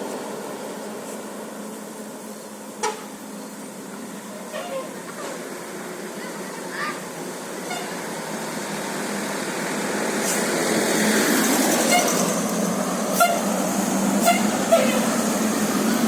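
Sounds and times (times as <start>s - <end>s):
bus engine and road noise: 0.0s - 16.0s.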